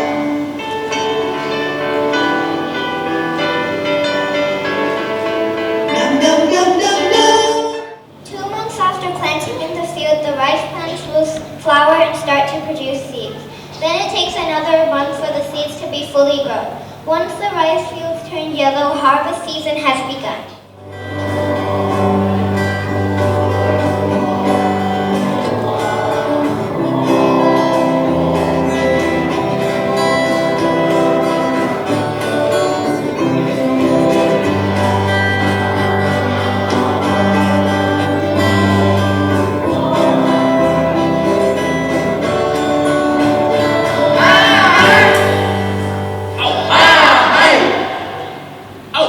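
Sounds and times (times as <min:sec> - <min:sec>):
music with held notes and bass: 0:00.0 - 0:08.0, 0:20.8 - 0:47.2
person singing: 0:05.9 - 0:08.0, 0:43.5 - 0:45.7.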